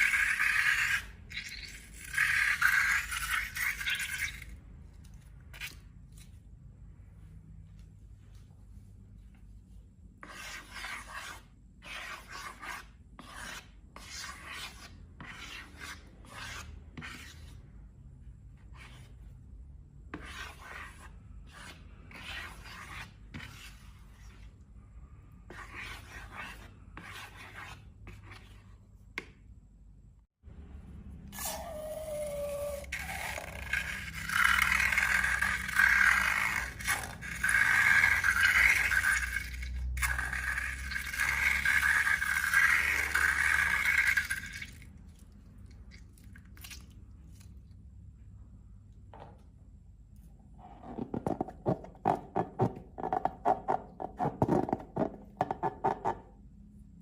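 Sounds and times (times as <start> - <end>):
slime being scraped: 0.0 - 6.4, 10.2 - 17.6, 20.2 - 24.6, 31.3 - 45.2.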